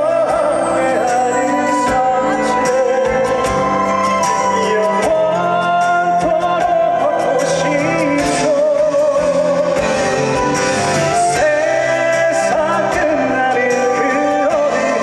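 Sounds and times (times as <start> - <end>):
backing track music: 0.0 - 15.0
person singing: 0.0 - 15.0.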